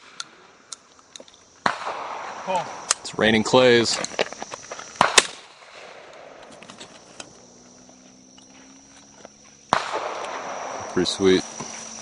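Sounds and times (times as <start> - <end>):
shotgun shots: 1.6 - 3.0, 4.9 - 6.6, 9.7 - 11.6.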